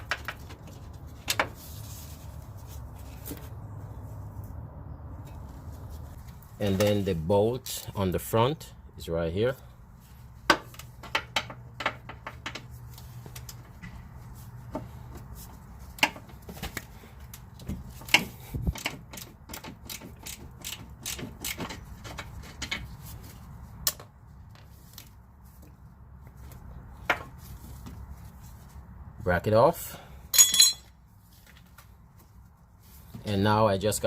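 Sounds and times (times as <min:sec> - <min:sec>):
ratchet wrench clicking: 0:18.7 - 0:21.6.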